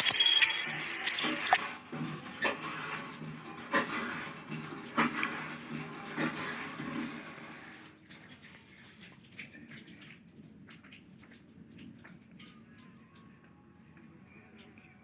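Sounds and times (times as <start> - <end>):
squirrel chirping: 0.0 - 1.6.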